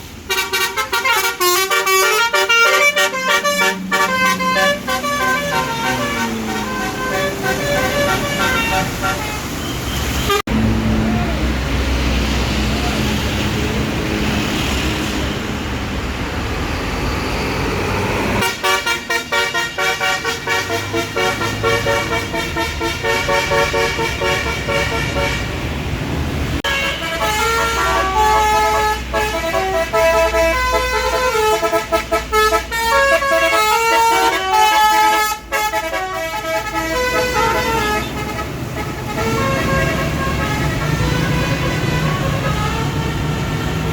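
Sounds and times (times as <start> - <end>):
bus engine rumble: 0.0 - 43.9
air horn playing tunes: 0.3 - 9.6, 18.4 - 25.5, 26.6 - 43.3.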